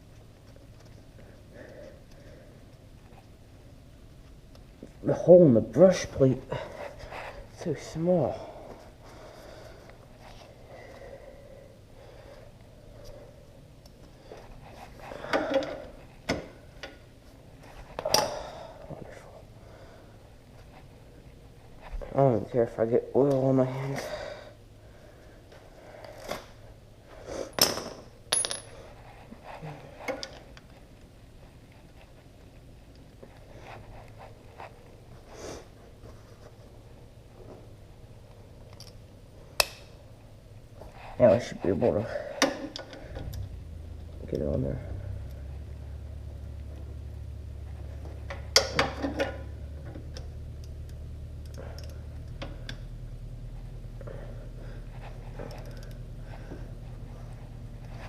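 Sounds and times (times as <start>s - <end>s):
small metal parts clinking: 27.5s - 28.9s
low hum: 42.8s - 58.0s.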